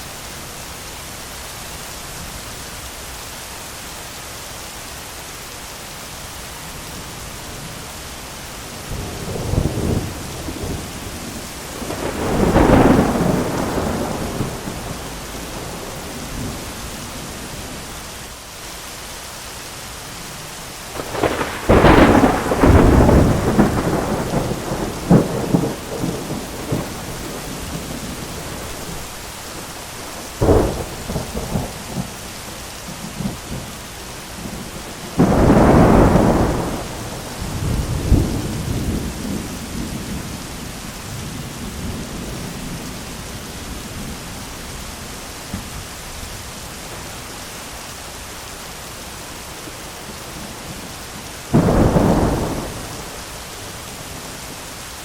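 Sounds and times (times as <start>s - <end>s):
heavy rain: 0.0s - 55.0s
thunder: 8.9s - 16.7s, 21.0s - 29.1s, 30.3s - 32.2s, 34.4s - 40.5s, 51.5s - 53.2s.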